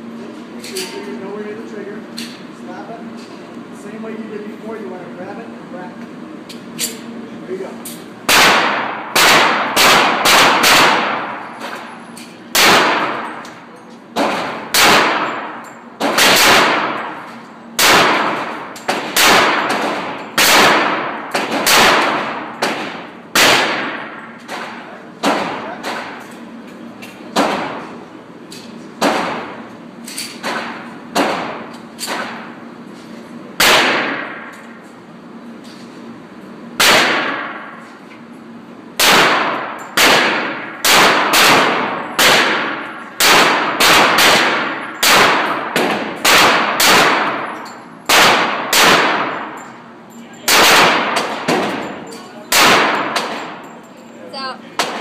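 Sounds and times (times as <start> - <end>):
handgun shots with ringing tail: 8.3 - 11.4, 12.5 - 13.4, 14.2 - 17.2, 17.8 - 26.2, 33.6 - 34.6, 36.8 - 37.7, 39.0 - 49.7, 50.5 - 53.7.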